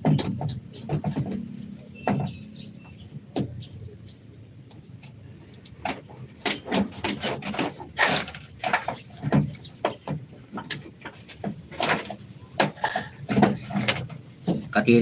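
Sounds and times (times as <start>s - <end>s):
knocks and clicks of hand work: 0.0s - 2.4s.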